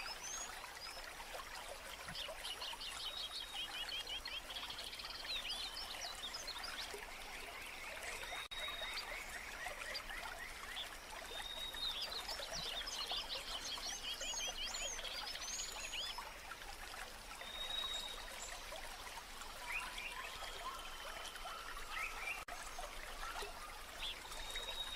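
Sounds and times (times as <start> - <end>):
stream trickling: 0.0 - 24.9
birds singing: 19.5 - 24.9.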